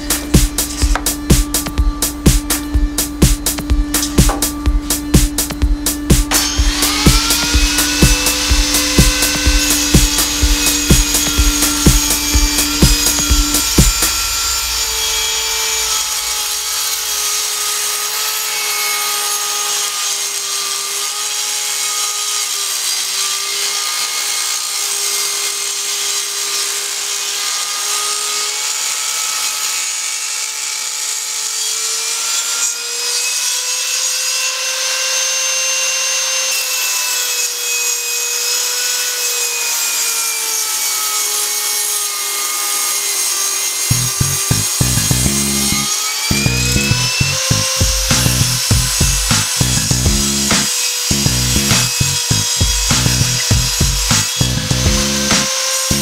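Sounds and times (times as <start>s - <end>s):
sharp knocks: 0.0s - 14.5s
power tool cutting wood: 0.0s - 56.0s.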